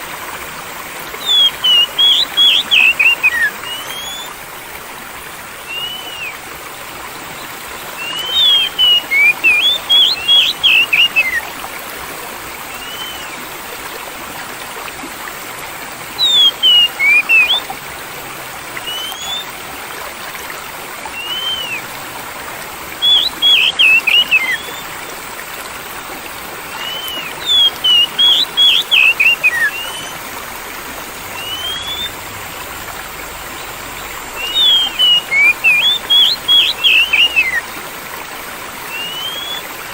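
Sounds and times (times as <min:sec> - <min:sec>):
flowing water: 0:00.0 - 0:39.9
songbird singing: 0:01.1 - 0:04.4, 0:05.6 - 0:06.4, 0:07.3 - 0:11.6, 0:12.7 - 0:13.5, 0:16.1 - 0:17.8, 0:18.7 - 0:19.5, 0:21.1 - 0:21.9, 0:22.9 - 0:25.2, 0:26.7 - 0:30.2, 0:31.3 - 0:37.7, 0:38.9 - 0:39.7.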